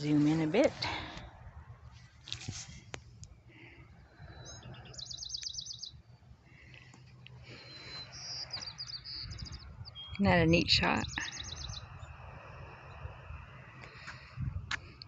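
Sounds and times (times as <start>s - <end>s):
low background rumble: 0.0s - 15.0s
songbird trilling: 4.4s - 6.0s, 7.6s - 12.1s.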